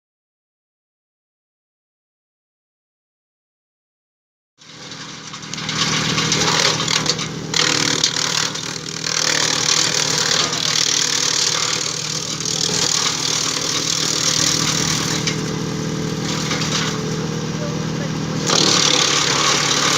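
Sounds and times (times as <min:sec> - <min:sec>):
shredder machine hum: 0:04.6 - 0:19.9
branches being chopped: 0:05.2 - 0:17.2, 0:18.4 - 0:19.9.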